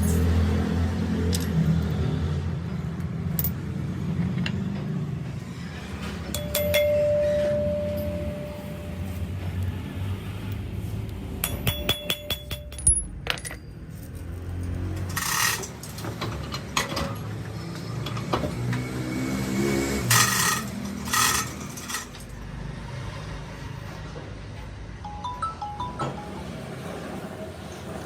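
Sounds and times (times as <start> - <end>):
metal clinks: 0.0 - 0.4, 11.4 - 13.8, 20.1 - 22.3
ringing tone: 6.4 - 9.0.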